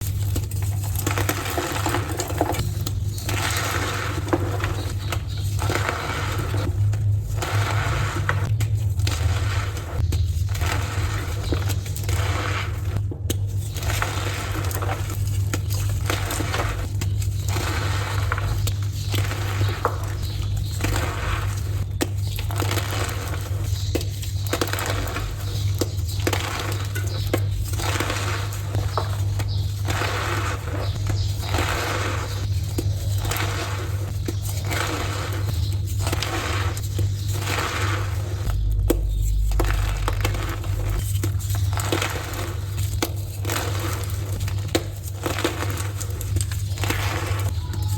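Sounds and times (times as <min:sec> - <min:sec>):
chalk blocks crunching in hands: 0:00.0 - 0:47.9
steady low hum: 0:00.0 - 0:47.9
low hum: 0:35.4 - 0:44.6.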